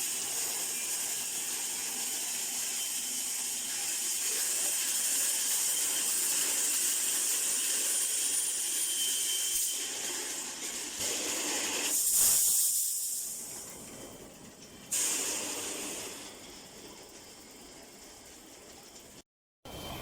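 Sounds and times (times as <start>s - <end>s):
welding machine hissing: 0.0s - 13.7s, 14.9s - 16.4s.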